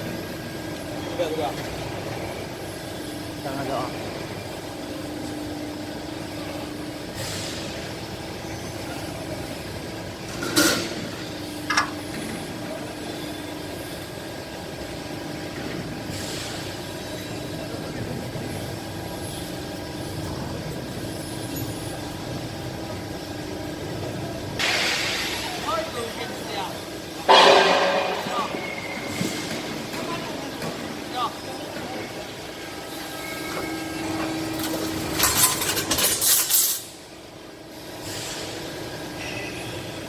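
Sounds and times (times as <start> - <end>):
hydraulic power unit humming: 0.0 - 36.2
loud metallic clunk: 24.6 - 25.4, 27.2 - 29.7
ringing metal clank: 27.3 - 29.2.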